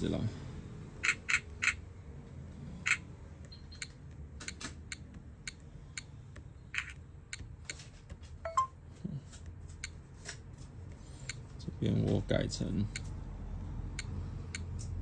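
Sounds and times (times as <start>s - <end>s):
fingers tapping touchscreen: 2.9s - 8.7s.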